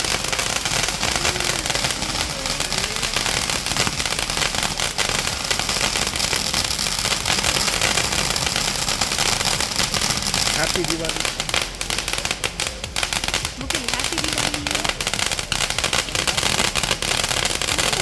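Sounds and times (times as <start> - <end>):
firecrackers crackling: 0.0 - 18.0.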